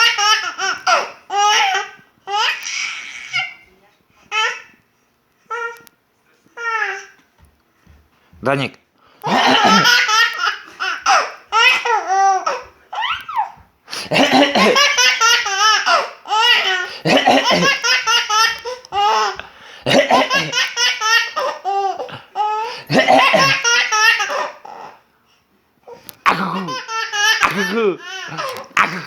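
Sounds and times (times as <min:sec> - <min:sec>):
baby laughing: 0:00.0 - 0:03.6, 0:09.2 - 0:25.0, 0:26.2 - 0:29.0.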